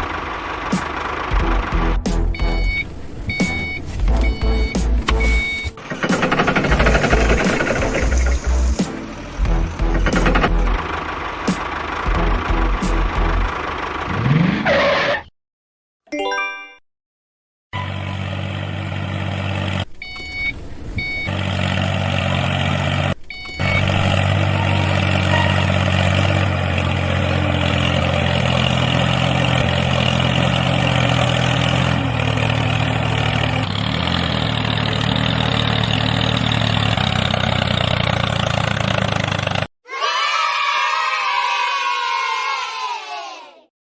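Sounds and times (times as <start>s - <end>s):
vehicle engine idling: 0.0s - 14.3s, 17.9s - 39.7s
short high beeps: 2.4s - 5.8s.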